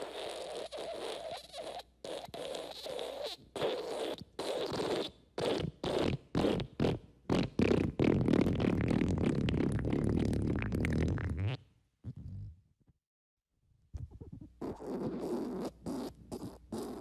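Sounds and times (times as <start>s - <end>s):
fart sound effect: 7.3s - 12.6s.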